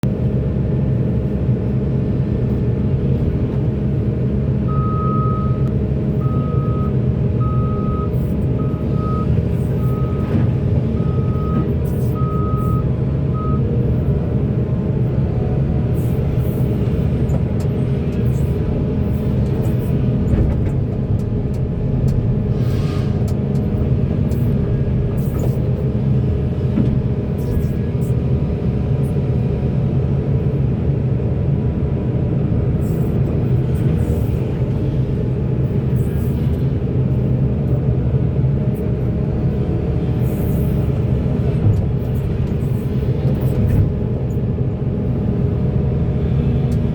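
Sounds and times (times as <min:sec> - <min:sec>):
excavator diesel engine running: 0:00.0 - 0:46.9
truck reversing alarm beeping: 0:04.6 - 0:13.8.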